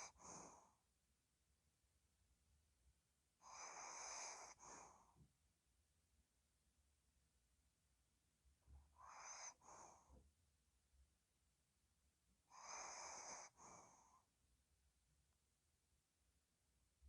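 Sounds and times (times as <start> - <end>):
dog snoring softly: 0.0 - 0.8, 3.4 - 5.3, 8.6 - 10.2, 12.4 - 14.3.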